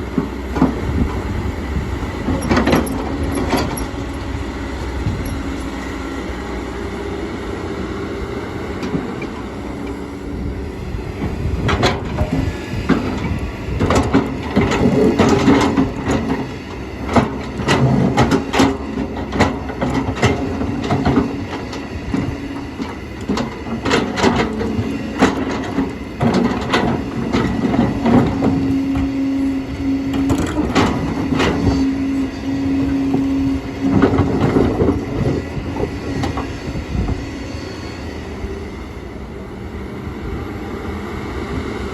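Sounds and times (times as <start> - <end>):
excavator engine and hydraulics: 0.0 - 41.9.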